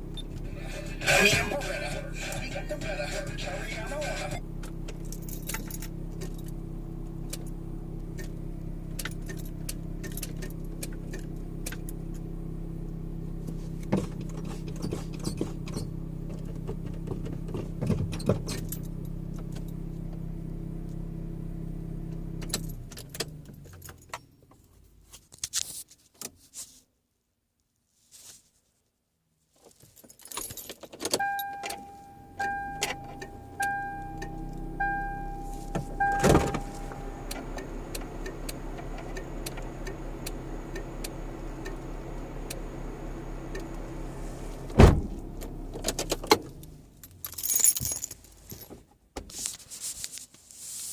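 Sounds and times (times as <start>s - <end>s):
car engine running: 0.0s - 24.1s, 31.2s - 48.6s
car warning chime beeping: 31.2s - 46.3s.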